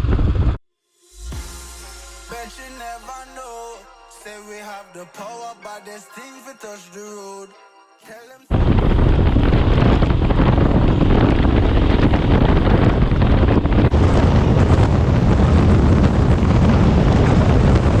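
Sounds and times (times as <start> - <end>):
wind buffeting microphone: 8.5 - 18.0.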